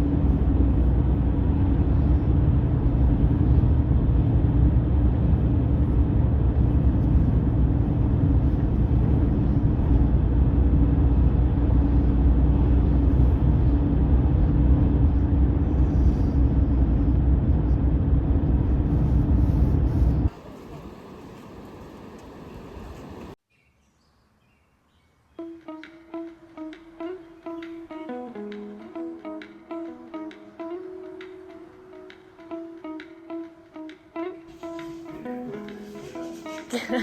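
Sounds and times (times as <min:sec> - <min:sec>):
constant droning hum: 0:00.0 - 0:23.4
vehicle rumbling: 0:00.0 - 0:23.4.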